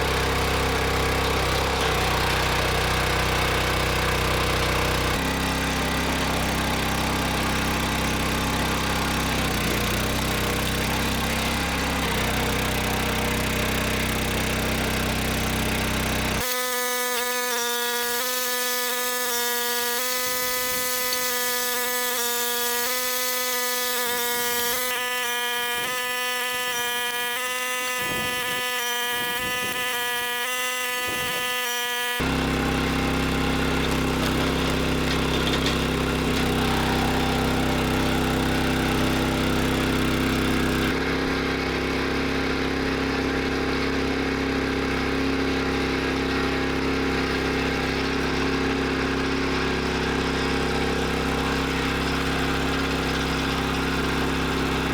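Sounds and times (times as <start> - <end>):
gas engine running: 0.0 - 16.5, 32.2 - 54.9.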